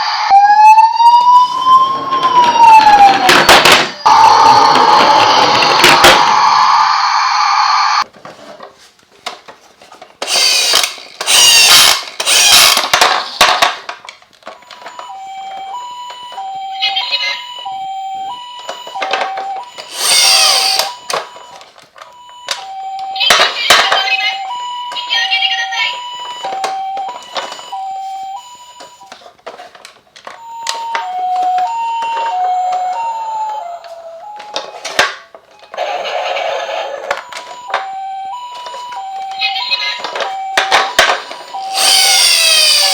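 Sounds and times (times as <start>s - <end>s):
toy electronic siren: 0.0s - 8.0s, 10.3s - 13.6s, 14.5s - 29.2s, 30.2s - 42.9s
toy whirring and rattling: 10.2s - 13.6s, 19.8s - 21.0s, 40.1s - 42.9s
electronic beeping tones: 36.8s - 42.9s.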